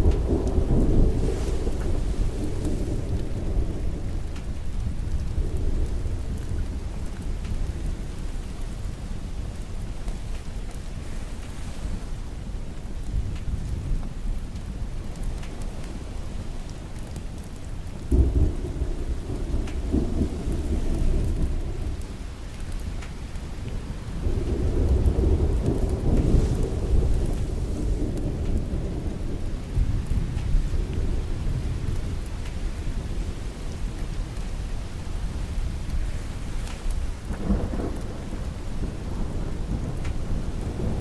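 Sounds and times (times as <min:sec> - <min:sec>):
thunder rolling: 0:00.0 - 0:07.2, 0:17.9 - 0:34.4, 0:36.9 - 0:41.0
steady rain: 0:00.0 - 0:41.0.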